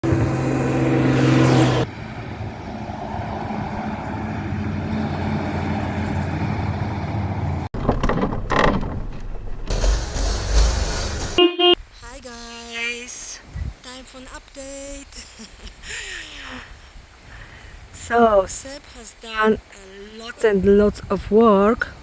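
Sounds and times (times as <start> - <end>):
truck engine running: 0.0 - 7.7.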